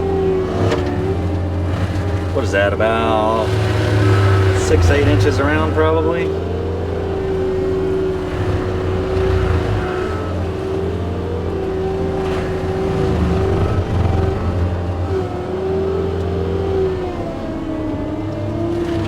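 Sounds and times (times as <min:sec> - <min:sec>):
diesel engine at high throttle: 0:00.0 - 0:19.0
mulcher head high whine: 0:11.4 - 0:17.3.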